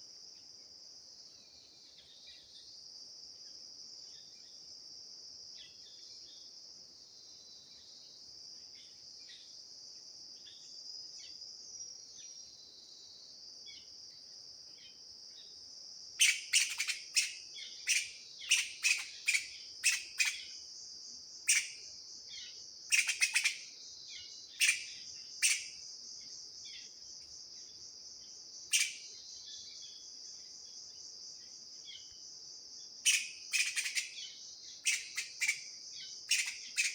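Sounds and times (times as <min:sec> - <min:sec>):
sharp insect chirping calls: 0:00.0 - 0:36.9
high-pitched insect drone: 0:16.2 - 0:20.8, 0:21.5 - 0:27.0, 0:33.1 - 0:36.9.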